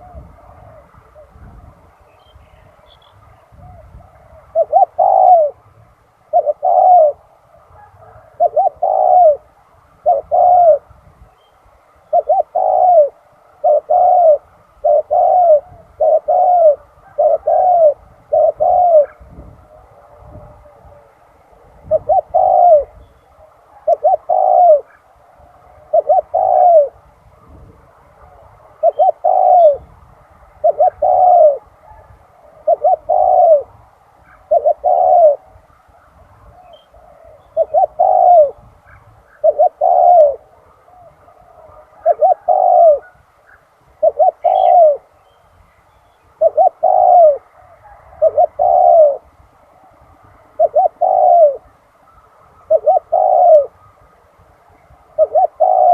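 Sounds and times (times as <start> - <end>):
dove cooing: 0.0 - 11.0, 12.0 - 55.9.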